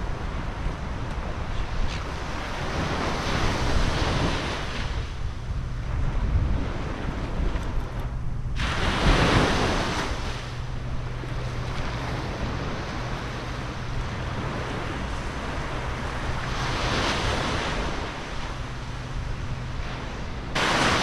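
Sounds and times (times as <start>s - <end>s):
sea waves washing on shore: 0.0s - 21.0s
wind buffeting microphone: 0.0s - 21.0s.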